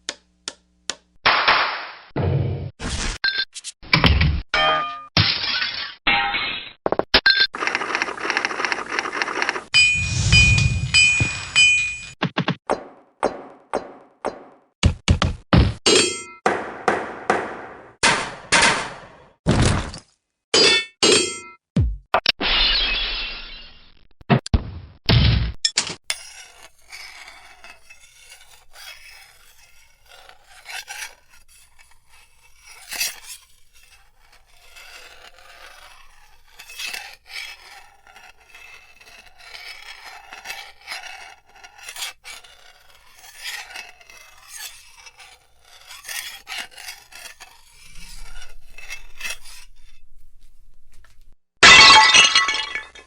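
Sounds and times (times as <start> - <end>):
surface rubbing and scraping: 7.6 - 12.2, 26.1 - 51.1.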